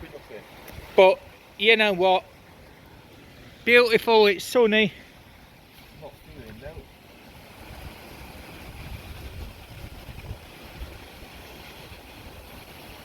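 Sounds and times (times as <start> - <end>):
faint steady hiss: 0.0 - 13.0
wind buffeting microphone: 6.0 - 13.0.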